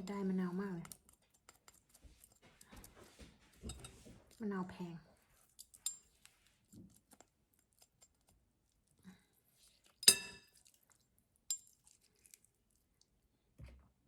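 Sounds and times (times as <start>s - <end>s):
sharp ringing clink: 10.0s - 10.4s.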